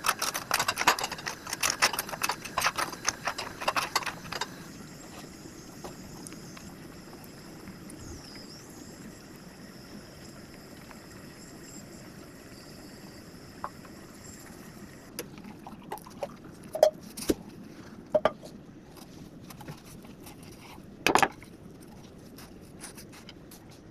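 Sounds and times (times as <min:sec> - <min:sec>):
utensils knocking against dishes: 0:00.0 - 0:04.6.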